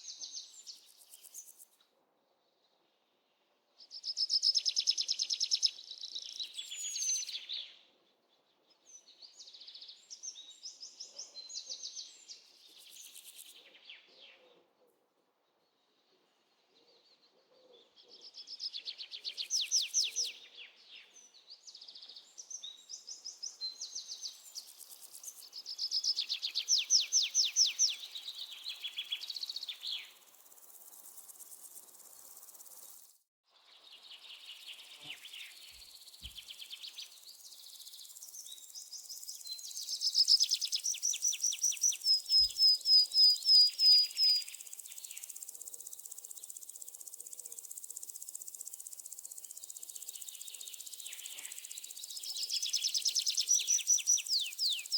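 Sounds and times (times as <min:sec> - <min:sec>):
birds singing: 0:25.6 - 0:30.2, 0:34.5 - 0:46.6, 0:50.0 - 0:54.9
high insect chirring: 0:30.2 - 0:33.2, 0:44.0 - 0:54.9.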